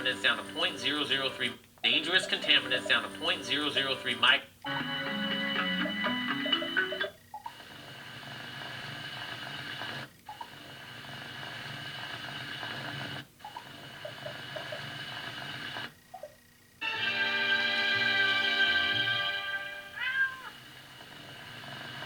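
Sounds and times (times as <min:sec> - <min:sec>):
television music: 0:00.0 - 0:10.0, 0:16.8 - 0:22.0.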